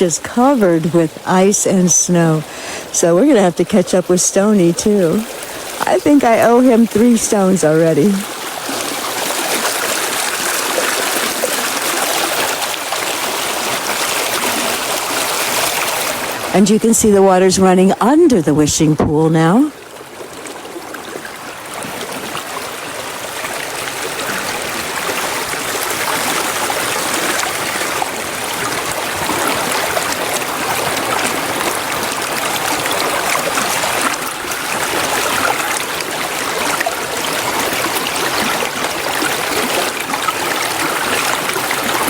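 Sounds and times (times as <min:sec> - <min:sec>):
stream water trickling under ice: 0:00.0 - 0:42.0.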